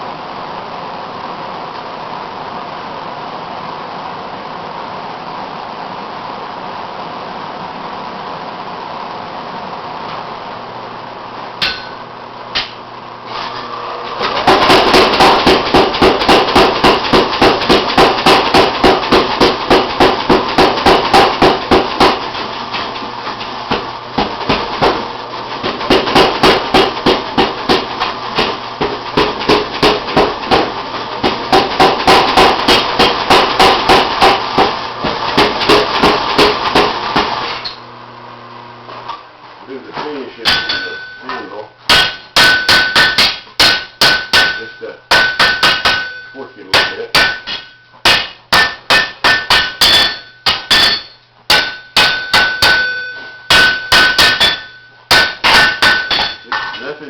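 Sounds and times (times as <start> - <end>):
hammer striking iron on anvil: 11.6 - 12.8, 14.5 - 22.9, 25.6 - 36.9, 40.4 - 56.9.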